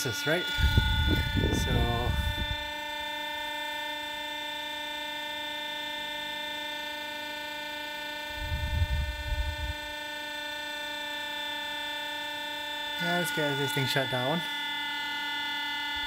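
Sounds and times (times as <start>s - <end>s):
laptop cooling fan whining: 0.0s - 16.0s
low rumble: 0.6s - 2.7s.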